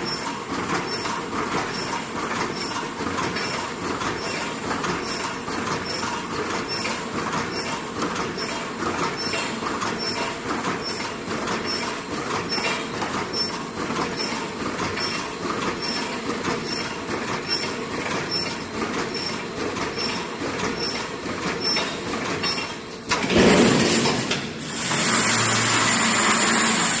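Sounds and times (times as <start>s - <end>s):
machine clacking: 0.0s - 26.9s
welding machine running: 14.2s - 27.0s
sudden loud machine noise: 22.5s - 27.0s.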